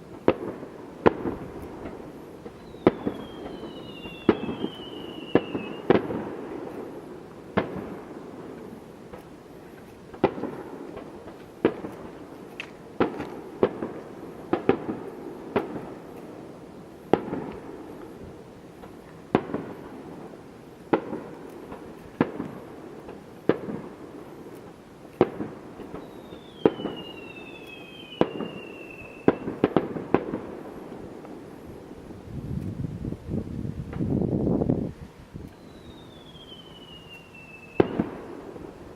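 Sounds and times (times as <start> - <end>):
fireworks shells bursting: 0.0 - 31.8, 35.4 - 38.9
falling whistles: 2.5 - 6.0, 25.9 - 29.6, 35.5 - 38.1.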